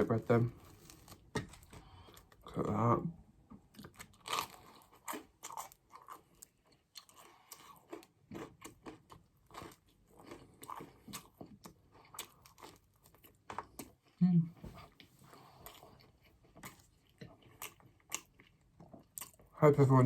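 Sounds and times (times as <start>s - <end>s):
crunchy biting and chewing: 3.8s - 14.0s, 15.0s - 19.5s.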